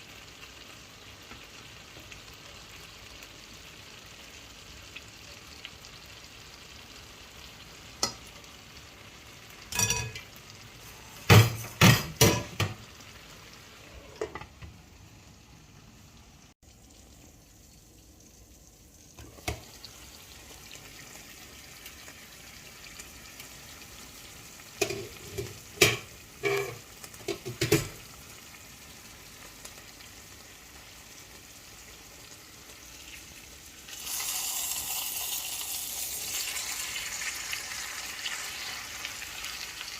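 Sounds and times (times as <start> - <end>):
food sizzling in a pot: 0.0 - 39.9
spoon scraping a pot: 24.8 - 27.6.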